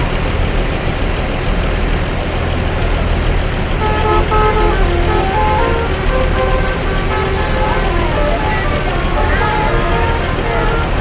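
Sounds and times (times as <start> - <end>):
low vehicle rumble: 3.8 - 11.0
musical air horn tune: 3.8 - 11.0.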